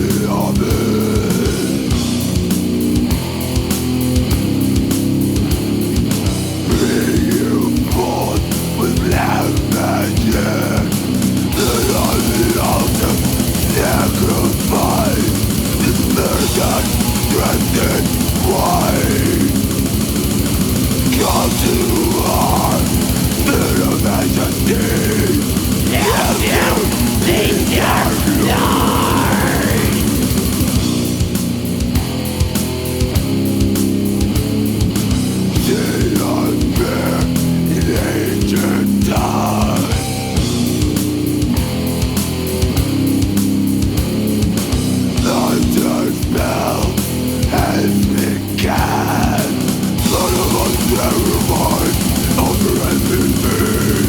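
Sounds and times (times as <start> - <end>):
distorted guitar riffs: 0.0 - 54.0
fast dense drumming: 0.0 - 54.0.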